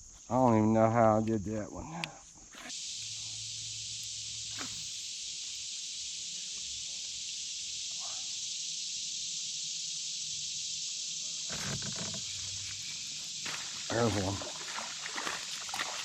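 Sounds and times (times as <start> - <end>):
insect chorus drone: 0.0 - 16.0
knocking rustle: 11.4 - 13.2.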